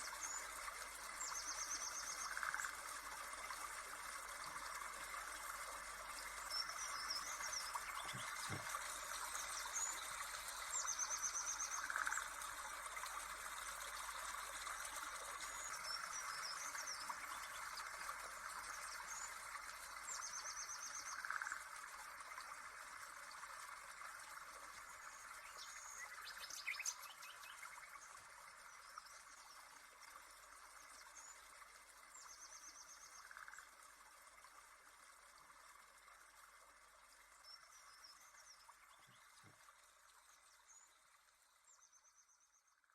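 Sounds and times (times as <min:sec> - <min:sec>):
trilled bird calls: 0:06.5 - 0:12.4
birds chirping: 0:07.8 - 0:08.7.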